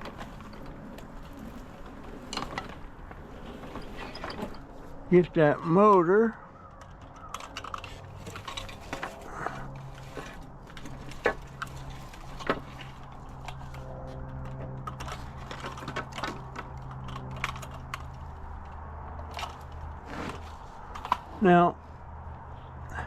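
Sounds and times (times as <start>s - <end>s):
metal clicking and rattling: 0.0s - 4.8s, 6.6s - 20.0s.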